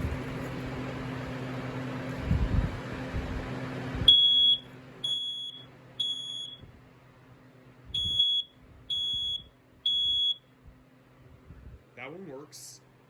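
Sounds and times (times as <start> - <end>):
smoke alarm beeping: 4.1 - 6.7, 7.9 - 10.5.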